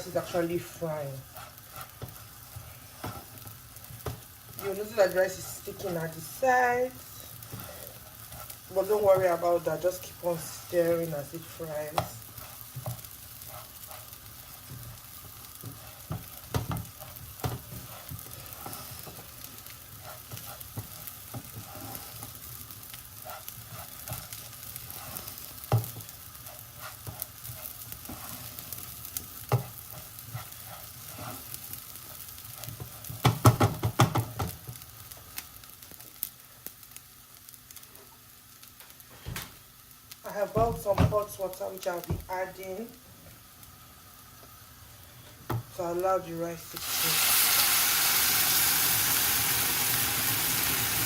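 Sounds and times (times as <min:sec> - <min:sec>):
spoon stirring and scraping: 0:00.0 - 0:35.2
rice sizzling in hot fat: 0:00.0 - 0:51.0.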